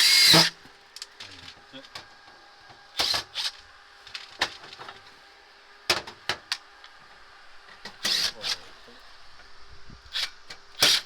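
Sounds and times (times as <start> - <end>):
power tool bursts: 0.0 - 0.6, 3.0 - 3.6, 8.0 - 8.7, 10.1 - 11.0.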